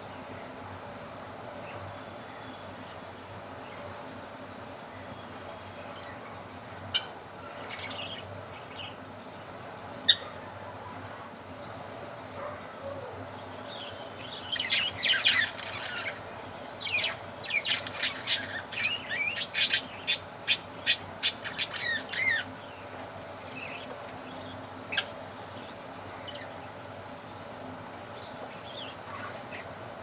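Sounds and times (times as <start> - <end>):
budgerigars chirping: 14.2 - 16.2, 16.8 - 22.5.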